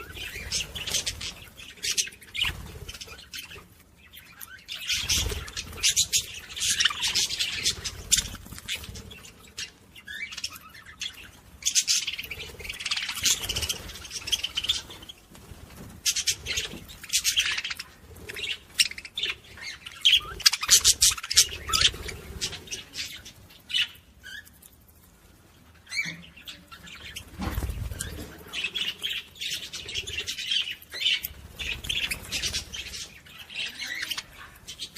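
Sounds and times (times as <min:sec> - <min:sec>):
budgerigars chattering: 0:04.3 - 0:15.0, 0:16.1 - 0:23.2.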